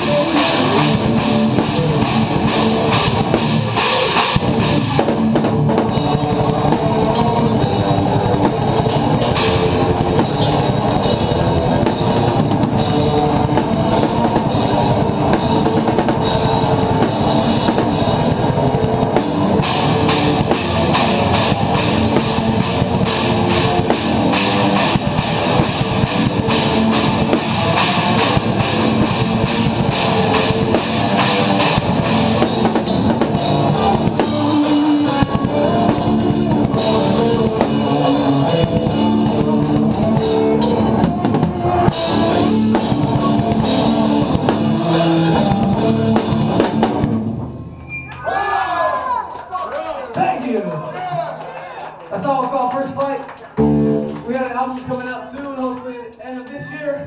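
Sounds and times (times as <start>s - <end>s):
progressive metal song: 0.0s - 47.7s
rock drum kit played hard: 0.0s - 47.9s, 53.6s - 54.4s.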